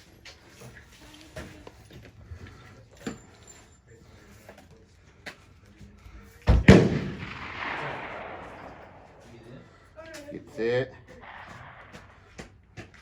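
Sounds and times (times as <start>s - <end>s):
gunshot echoing: 6.5s - 13.0s.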